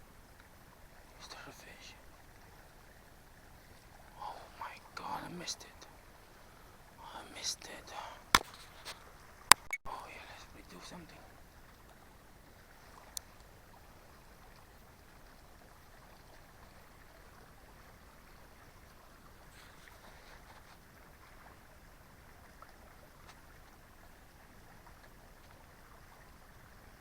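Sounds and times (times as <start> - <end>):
faint background hiss: 0.0 - 27.0
faint ticks: 0.0 - 27.0
sharp click: 9.5 - 9.8.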